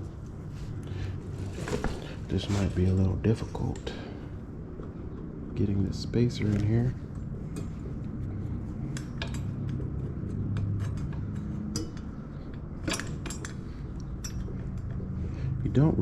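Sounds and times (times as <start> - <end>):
steady low hum: 0.0 - 16.0
light metallic clinks and taps: 7.1 - 15.2.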